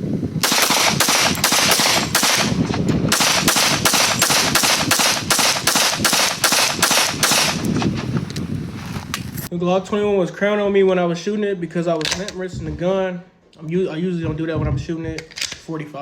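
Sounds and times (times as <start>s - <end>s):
rapid pistol fire: 0.4s - 7.8s.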